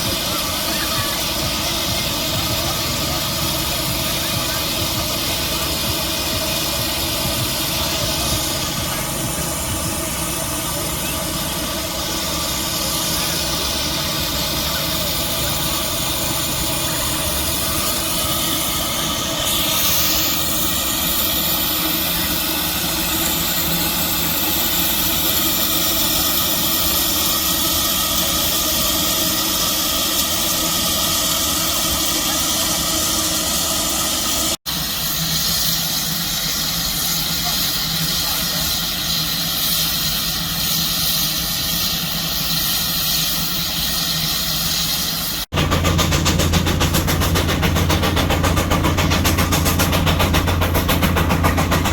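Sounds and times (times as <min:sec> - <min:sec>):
low running drone: 0:00.0 - 0:34.6
steam engine hissing: 0:00.0 - 0:51.9.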